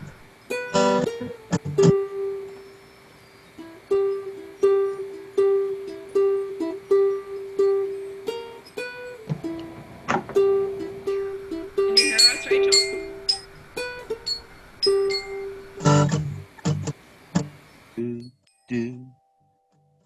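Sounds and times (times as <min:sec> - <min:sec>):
plucked instrument note: 0:00.0 - 0:02.8, 0:03.6 - 0:17.5
clicks: 0:09.3 - 0:17.6.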